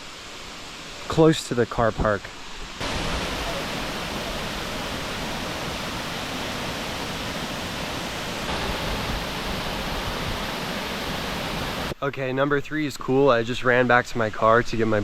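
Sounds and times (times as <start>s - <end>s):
waterfall rushing: 2.3s - 12.0s.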